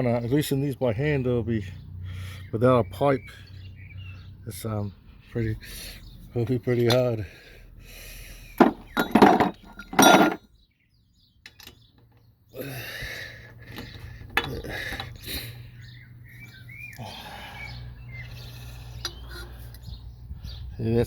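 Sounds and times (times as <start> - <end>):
bird chirp: 0.0 - 21.0
metallic clanks of hand tools: 8.6 - 10.4.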